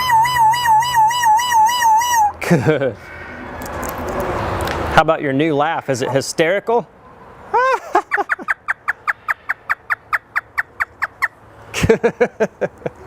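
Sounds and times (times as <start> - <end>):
parrot imitating laughter: 7.5 - 11.3.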